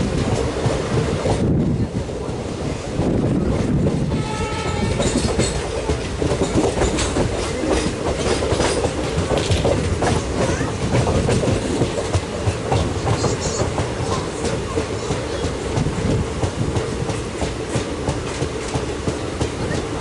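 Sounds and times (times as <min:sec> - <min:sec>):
train wheels clattering over rail joints: 0:00.0 - 0:20.0
locomotive horn blast: 0:04.1 - 0:05.2.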